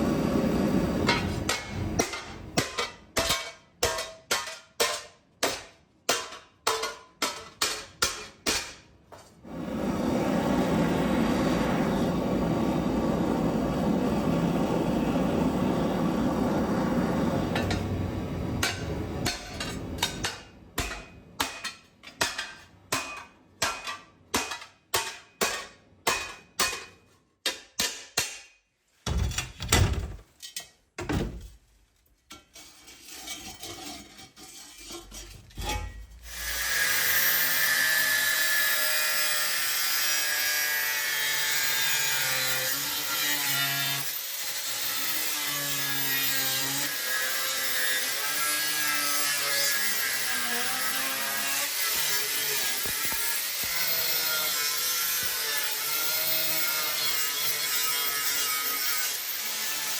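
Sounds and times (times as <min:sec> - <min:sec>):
power tool running on steel: 0:09.5 - 0:18.5, 0:36.3 - 0:59.9.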